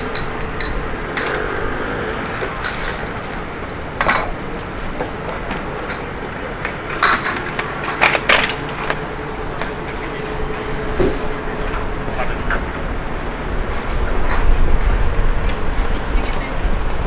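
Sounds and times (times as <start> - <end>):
sharp clinks: 0.0 - 10.4
street background noise: 0.0 - 17.0.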